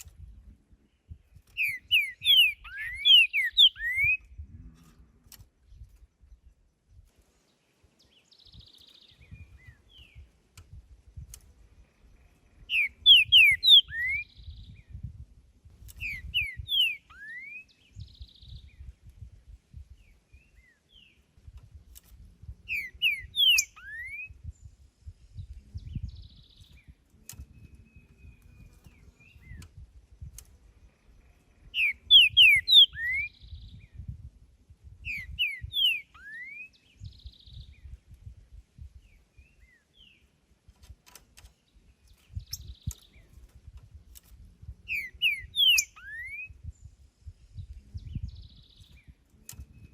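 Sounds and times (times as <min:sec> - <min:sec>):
bird singing whistled phrases: 0:01.6 - 0:04.3, 0:12.7 - 0:14.9, 0:16.0 - 0:18.8, 0:22.7 - 0:24.5, 0:31.7 - 0:34.0, 0:35.0 - 0:37.9, 0:44.9 - 0:46.8.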